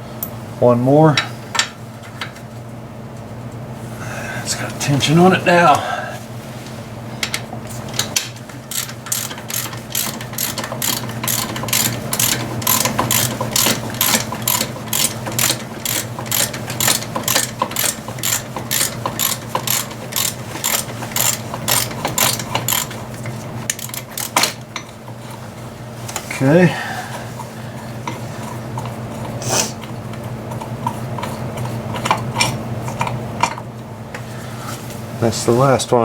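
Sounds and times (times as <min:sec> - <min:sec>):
ratchet wrench clicking: 0:08.7 - 0:23.0.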